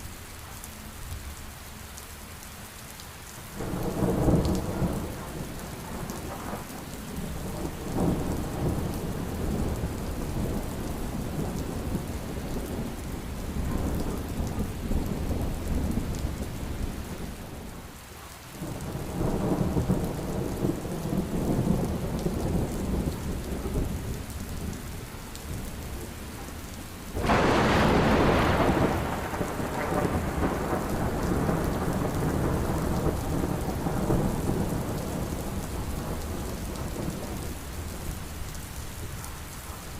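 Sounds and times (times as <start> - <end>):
heavy rain: 0.0 - 39.9
rolling thunder: 3.6 - 17.8, 18.6 - 24.8, 27.1 - 38.2
sharp thunderclap: 27.2 - 37.4.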